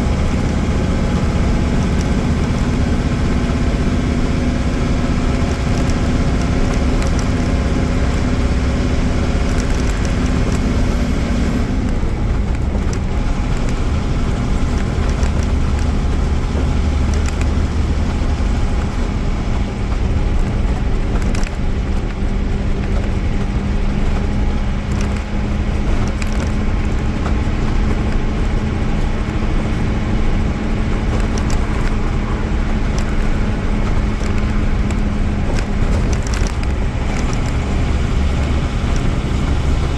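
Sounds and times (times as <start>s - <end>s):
bus diesel engine running: 0.0s - 39.9s.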